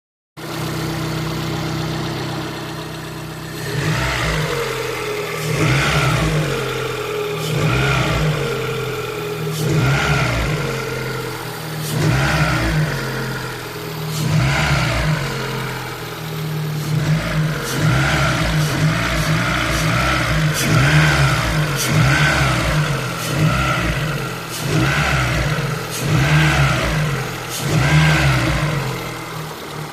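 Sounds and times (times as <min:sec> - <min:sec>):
car engine idling and revving: 0:00.4 - 0:29.9
faint engine clicks: 0:24.1 - 0:29.9.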